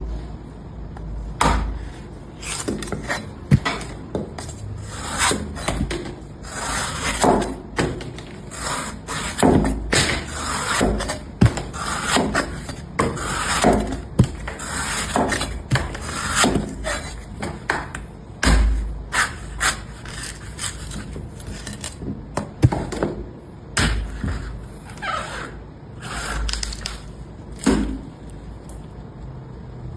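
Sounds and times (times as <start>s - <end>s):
blade chopping coconuts: 1.4s - 25.4s, 26.0s - 28.3s
blade scraping coconut: 2.4s - 17.7s, 19.1s - 22.0s, 23.8s - 27.1s.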